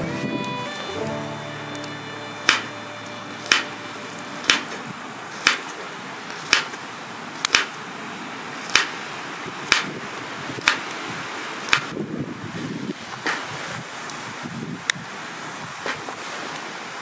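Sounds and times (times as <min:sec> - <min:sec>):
steady background hiss: 0:00.0 - 0:14.4
sharp chopping knocks: 0:03.5 - 0:03.7, 0:04.4 - 0:04.7, 0:05.4 - 0:05.7, 0:06.5 - 0:06.8, 0:07.5 - 0:07.7, 0:08.7 - 0:08.9, 0:09.7 - 0:09.9, 0:10.6 - 0:10.8.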